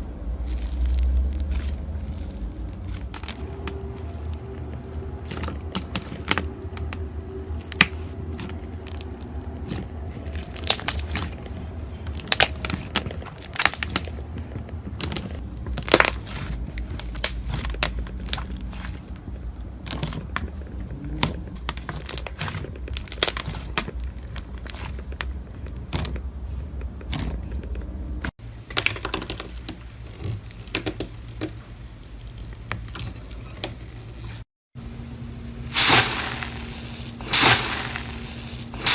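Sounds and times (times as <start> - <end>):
crunchy slime crackling: 0.0 - 6.7, 7.6 - 26.2, 35.7 - 38.9.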